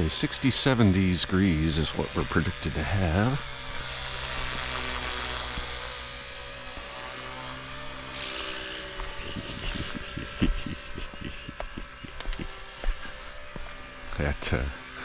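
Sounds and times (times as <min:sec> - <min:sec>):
low hum: 0:00.0 - 0:15.0
toy helicopter rotor whine: 0:00.0 - 0:15.0.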